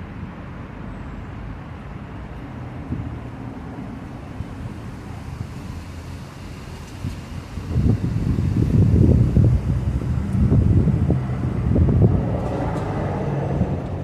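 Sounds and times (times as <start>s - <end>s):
outdoor background rumble: 0.0s - 14.0s.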